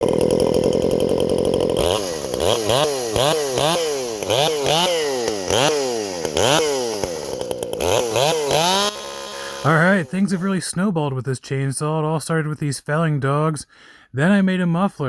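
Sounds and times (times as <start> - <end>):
chainsaw revving: 0.0 - 10.6.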